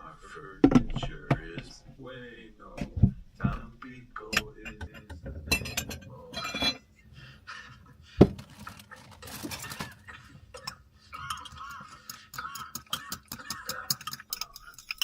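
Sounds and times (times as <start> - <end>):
dishes and cutlery clinking: 4.2 - 6.9, 8.4 - 15.0.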